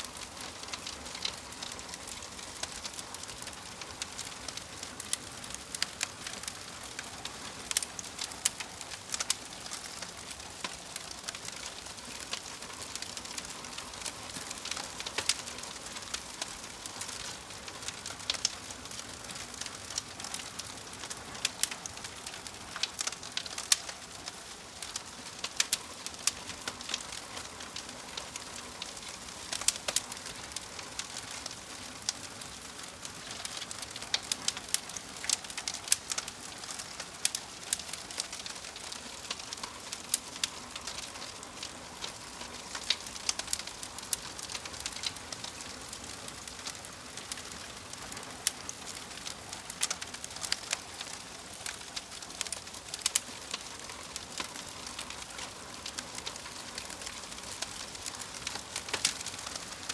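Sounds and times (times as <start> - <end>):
log fire crackling and popping: 0.0 - 59.9.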